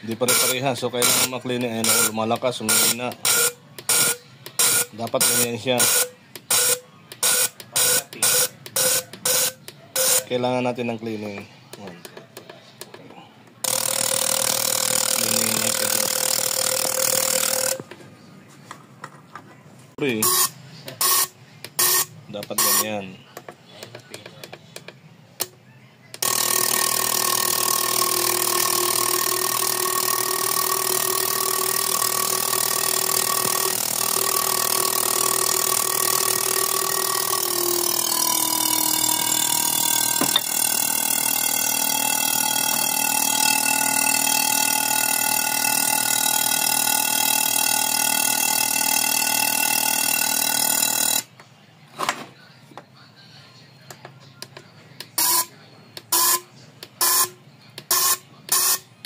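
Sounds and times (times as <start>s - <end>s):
machine buzzing drone: 13.7s - 17.8s, 26.2s - 51.3s.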